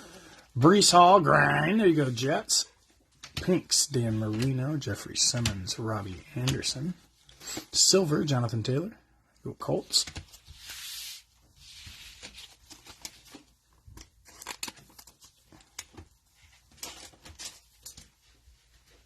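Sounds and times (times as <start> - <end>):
cards clicking and rustling: 11.9 - 18.1
wrapper crinkling: 12.2 - 16.0
cellophane wrapper tearing: 14.0 - 15.8.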